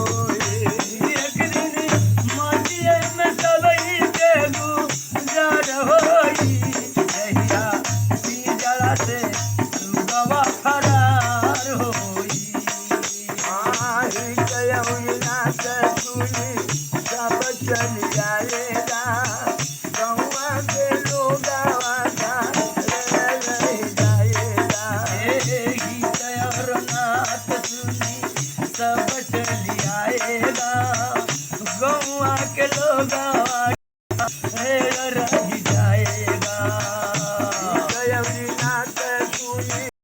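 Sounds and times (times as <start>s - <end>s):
drum beats: 0.0s - 39.9s.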